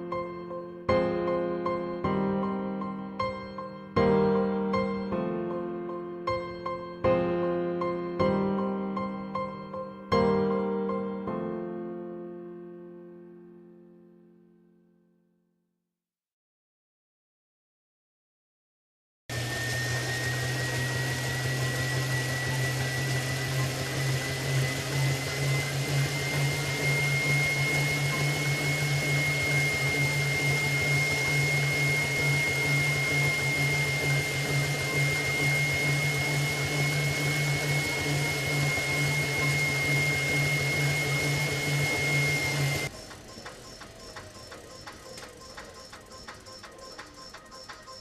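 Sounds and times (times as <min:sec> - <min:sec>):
bike trainer mechanical whine: 0:19.3 - 0:48.0
low hum: 0:19.6 - 0:47.7.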